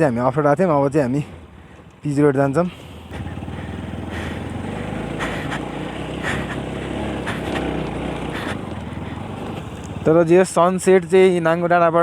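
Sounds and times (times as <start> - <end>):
motorcycle engine running: 2.7 - 10.2.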